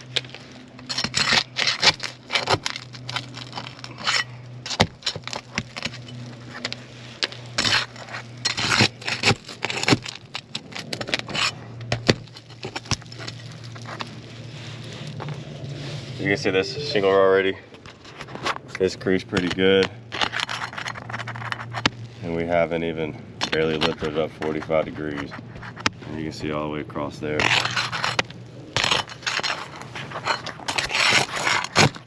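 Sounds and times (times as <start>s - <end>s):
shingles crackling and snapping: 0.0s - 16.0s, 17.8s - 26.5s, 27.4s - 32.0s
steady low hum: 0.0s - 18.7s.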